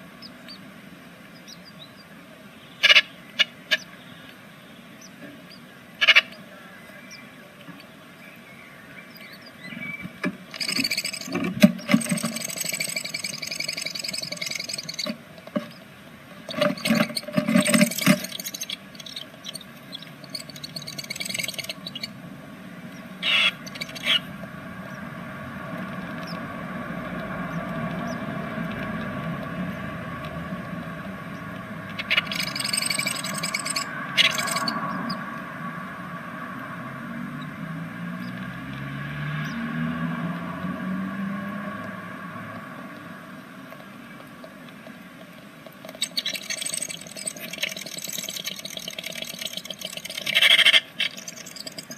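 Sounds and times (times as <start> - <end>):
low background hum: 0.0 - 39.6
bird rustling nest material: 10.4 - 22.1.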